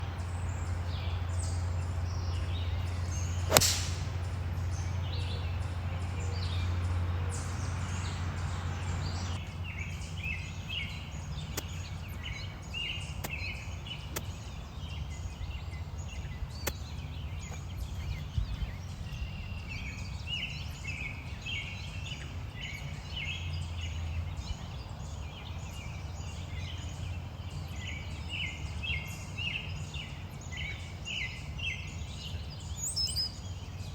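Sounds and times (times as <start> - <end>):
low steady rumble: 0.0 - 20.0
birds chirping: 0.0 - 33.9
golf club striking ball: 2.2 - 5.0.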